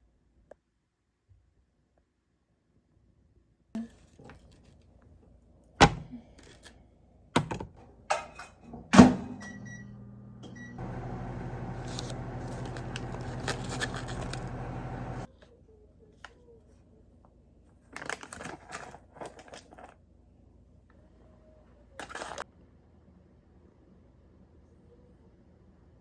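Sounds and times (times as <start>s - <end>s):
microwave humming: 8.2s - 15.3s.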